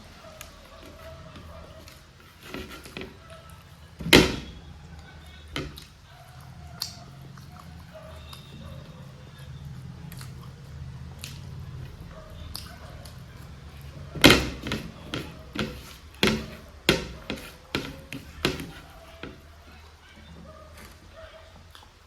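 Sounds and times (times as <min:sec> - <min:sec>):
quiet chewing: 0:00.0 - 0:14.2, 0:14.8 - 0:22.0.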